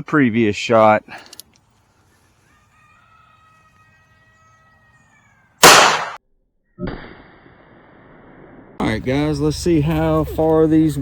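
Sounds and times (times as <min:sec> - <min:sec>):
revolver gunshot: 0:05.6 - 0:06.2, 0:06.8 - 0:08.8.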